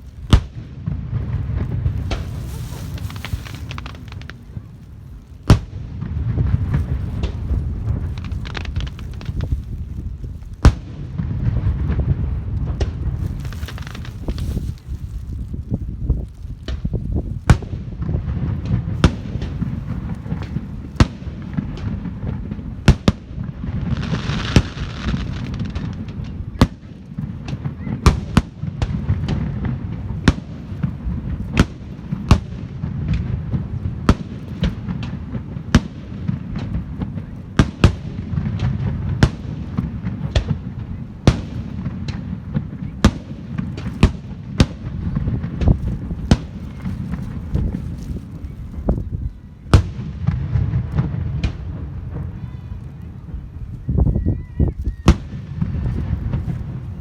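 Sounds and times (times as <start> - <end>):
low rumble: 0.0 - 22.8
fireworks bangs: 0.0 - 54.1, 54.7 - 57.0
crackling hiss: 0.0 - 57.0.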